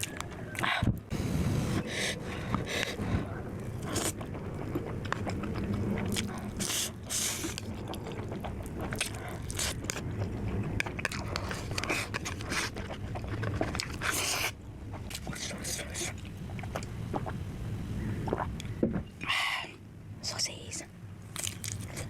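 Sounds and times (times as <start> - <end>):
person chewing noodles: 1.8 - 17.4, 21.3 - 22.0.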